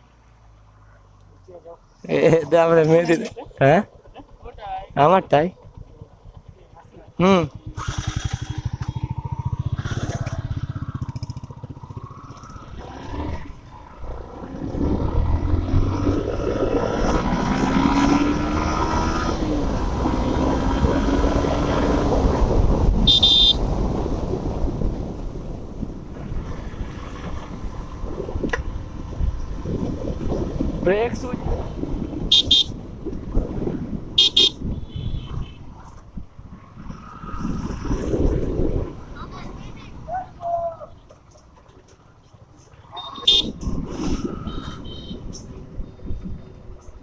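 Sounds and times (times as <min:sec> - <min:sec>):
road noise: 0:00.0 - 0:47.0
motorcycle engine running: 0:03.5 - 0:13.1, 0:23.0 - 0:23.6, 0:32.3 - 0:35.6, 0:43.0 - 0:43.6
short high beep: 0:23.1 - 0:23.6, 0:32.3 - 0:32.7, 0:34.2 - 0:34.6, 0:43.0 - 0:43.6.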